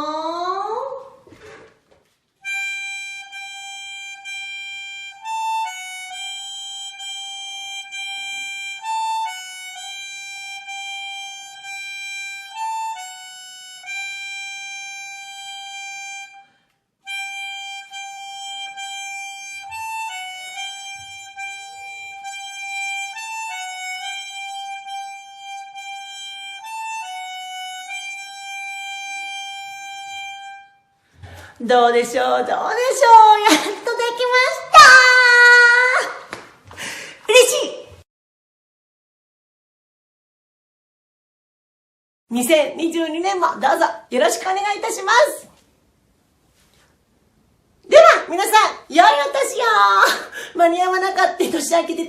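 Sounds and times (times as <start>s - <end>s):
reedy melody: 2.4s - 31.0s.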